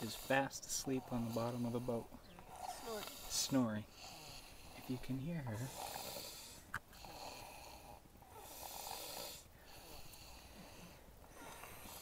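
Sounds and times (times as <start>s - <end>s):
girl snoring faintly: 0.0s - 12.0s.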